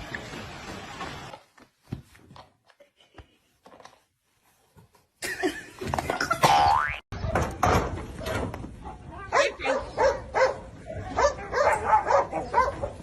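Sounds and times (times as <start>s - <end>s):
dog barking and yipping: 8.2s - 13.0s.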